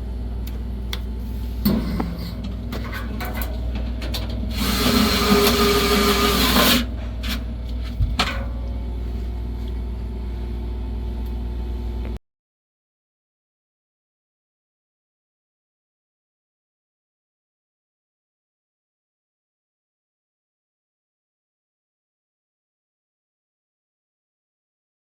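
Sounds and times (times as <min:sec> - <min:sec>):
steady low hum: 0:00.0 - 0:12.2
electric screwdriver whirring: 0:04.6 - 0:06.8.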